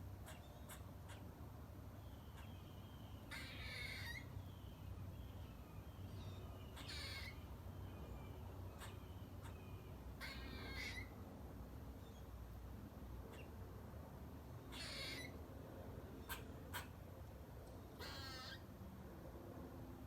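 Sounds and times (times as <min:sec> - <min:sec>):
squirrel rasping calls: 0:00.2 - 0:01.3, 0:02.3 - 0:02.7, 0:03.3 - 0:04.4, 0:06.2 - 0:07.5, 0:08.7 - 0:11.2, 0:13.3 - 0:13.6, 0:14.6 - 0:15.4, 0:16.2 - 0:17.0, 0:18.0 - 0:18.7.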